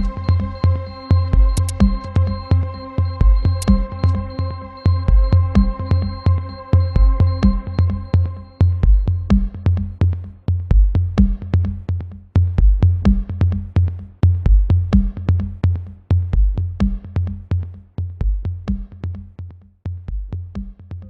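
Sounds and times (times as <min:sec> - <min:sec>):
repeating bass line: 0:00.0 - 0:10.0
electronic music: 0:00.0 - 0:10.5
drum machine ticks: 0:00.0 - 0:21.0.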